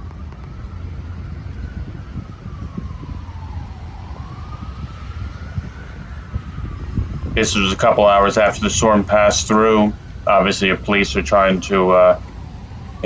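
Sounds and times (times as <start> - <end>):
siren wailing: 0.0 - 13.0.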